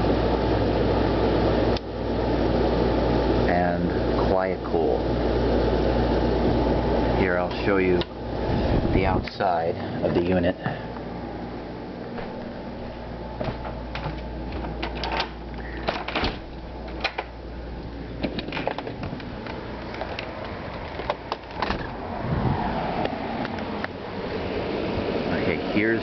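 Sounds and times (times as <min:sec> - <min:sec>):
air conditioner hum: 0:00.0 - 0:26.0
handling clicks and knocks: 0:13.4 - 0:17.3, 0:18.2 - 0:21.8.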